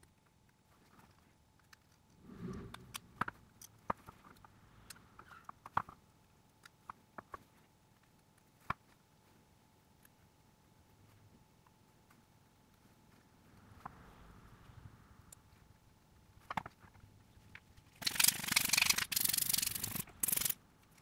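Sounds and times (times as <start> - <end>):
soft rustle: 7.4 - 17.9.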